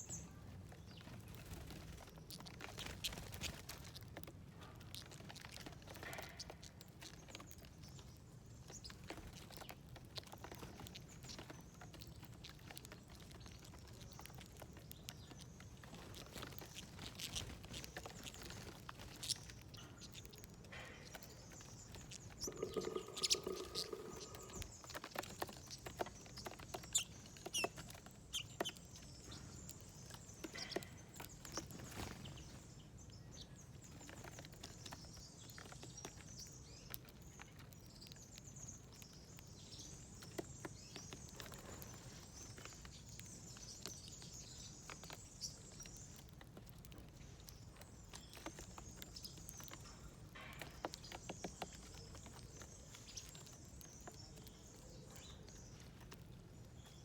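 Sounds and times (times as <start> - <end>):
bird chirps: 16.1 - 32.6
birds pecking taps: 19.1 - 31.7, 46.3 - 56.2.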